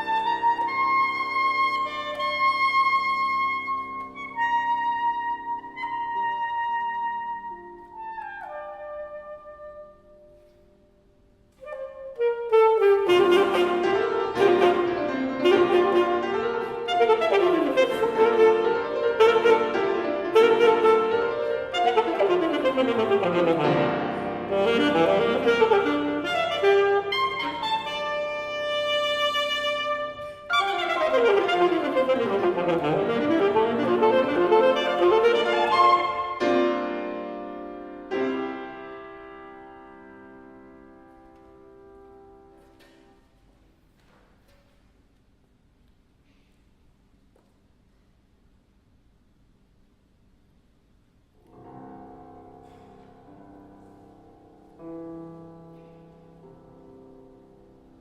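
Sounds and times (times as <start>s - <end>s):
alto saxophone: 0.0s - 10.8s, 11.5s - 43.0s
piano: 0.0s - 58.0s.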